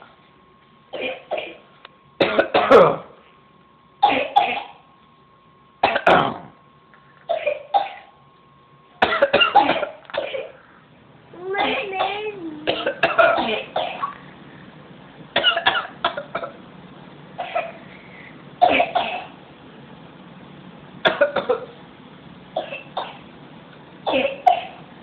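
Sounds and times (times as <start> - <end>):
infant fake-coughing: 2.2 - 3.1, 4.0 - 4.8, 5.8 - 6.5, 7.3 - 8.1, 9.0 - 10.6, 11.4 - 14.2, 15.4 - 16.6, 17.4 - 17.8, 18.6 - 19.4, 21.0 - 21.7, 24.1 - 24.8.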